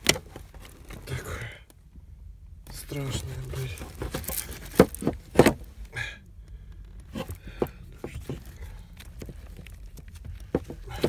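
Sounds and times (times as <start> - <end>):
handling clicks and knocks: 0.0 - 1.1, 2.6 - 5.8, 6.6 - 11.0.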